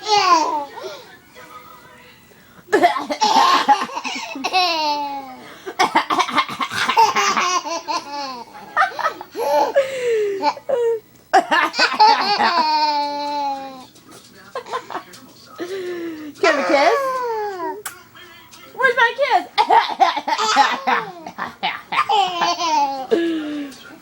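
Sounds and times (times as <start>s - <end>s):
adult fake coughing: 2.7s - 4.7s, 5.7s - 7.2s
baby belly-laughing: 19.6s - 23.2s.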